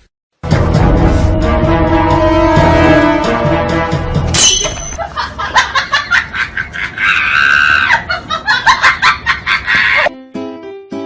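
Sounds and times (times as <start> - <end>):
music: 0.4 - 6.2, 10.1 - 11.0
shrill screaming: 7.0 - 8.1, 9.7 - 10.1.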